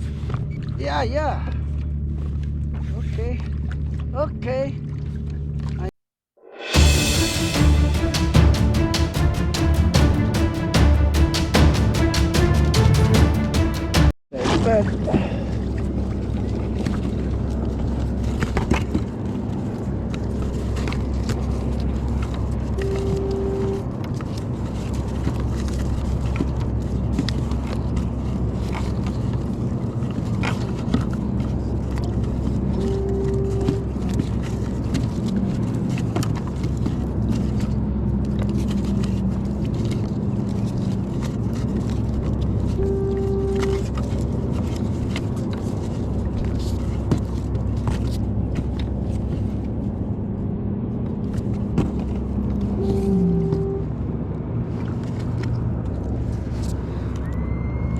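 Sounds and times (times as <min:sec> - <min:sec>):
engine droning: 0:14.7 - 0:57.9
short steady tone: 0:22.8 - 0:23.8, 0:32.8 - 0:33.9, 0:42.7 - 0:43.8, 0:52.8 - 0:53.9.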